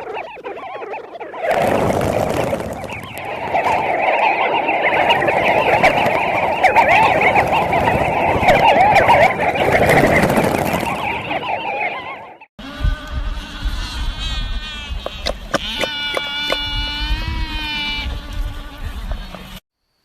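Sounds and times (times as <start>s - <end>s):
chorus of many birds calling: 0.0s - 12.5s.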